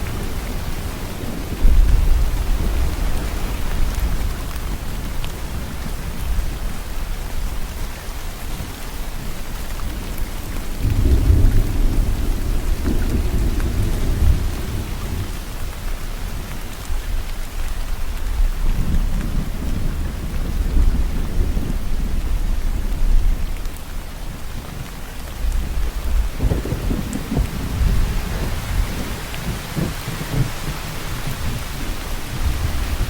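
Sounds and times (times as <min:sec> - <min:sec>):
steady rain falling: 0:00.0 - 0:33.0
rolling thunder rumbling: 0:10.7 - 0:15.7, 0:24.8 - 0:33.0.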